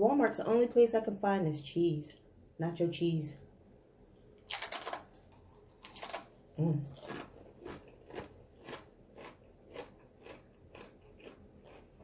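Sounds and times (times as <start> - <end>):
chewing crunchy chips: 4.5 - 12.0.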